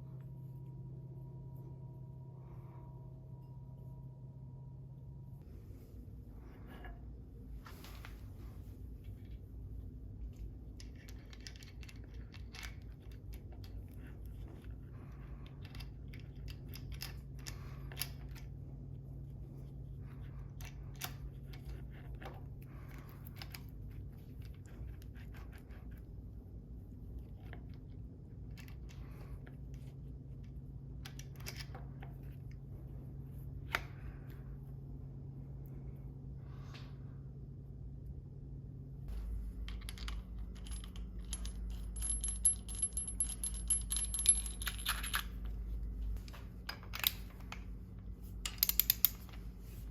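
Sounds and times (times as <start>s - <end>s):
steady low hum: 0.0s - 49.9s
tools and parts being handled: 10.2s - 18.6s, 39.1s - 49.9s.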